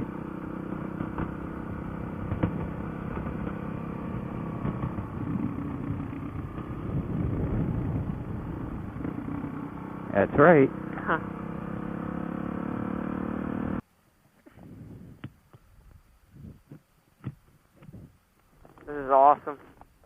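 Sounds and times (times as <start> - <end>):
motorcycle engine running: 0.0 - 13.8.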